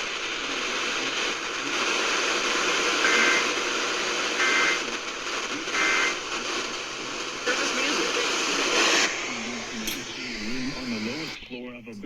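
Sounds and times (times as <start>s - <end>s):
radio static and hiss: 0.0s - 12.0s.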